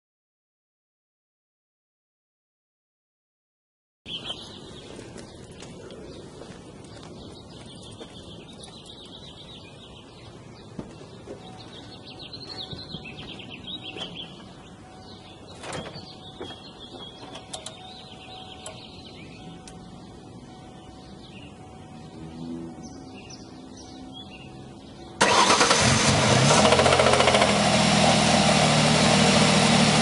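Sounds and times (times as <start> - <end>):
car engine running: 25.2 - 30.0.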